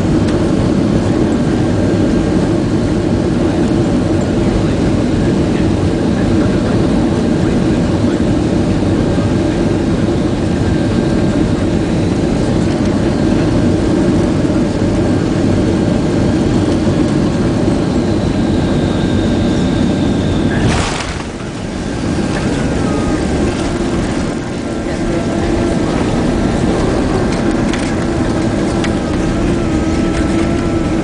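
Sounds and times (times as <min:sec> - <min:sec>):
airplane cabin engine rumble: 0:00.0 - 0:31.0
faint high whines: 0:17.7 - 0:31.0.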